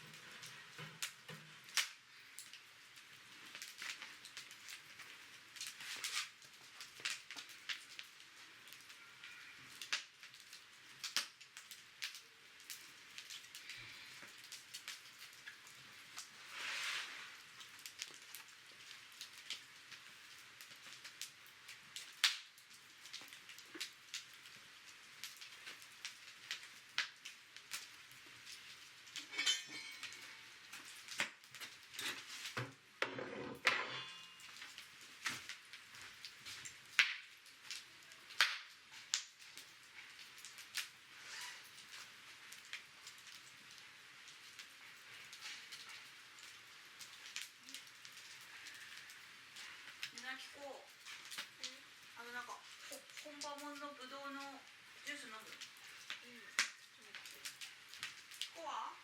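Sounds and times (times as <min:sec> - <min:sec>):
wood fire crackling and popping: 0:00.0 - 0:59.0
metal tin clinking: 0:29.2 - 0:30.2
metal scraping: 0:33.0 - 0:34.5.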